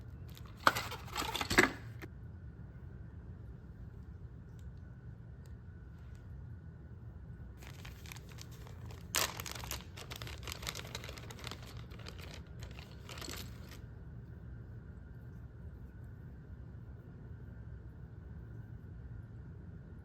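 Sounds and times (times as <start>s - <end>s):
packaging crinkling: 0.3s - 1.8s, 7.6s - 13.8s.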